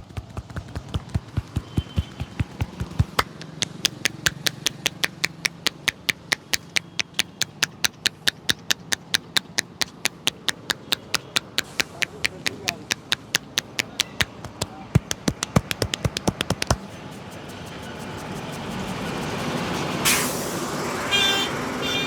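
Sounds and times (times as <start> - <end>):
hands slapping head rhythmically: 0.0 - 16.9.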